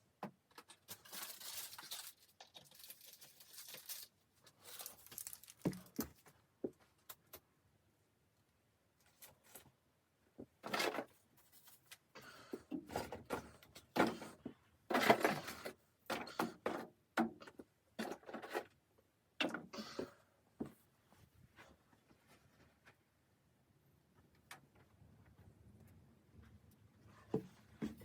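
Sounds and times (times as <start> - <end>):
objects scraping and rustling: 0.6 - 6.3, 10.6 - 16.9, 18.0 - 18.8.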